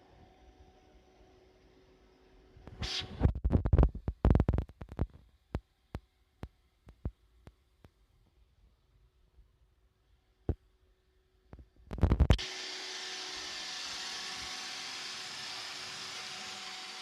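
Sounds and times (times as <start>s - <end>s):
robot vacuum whirring: 12.3s - 17.0s.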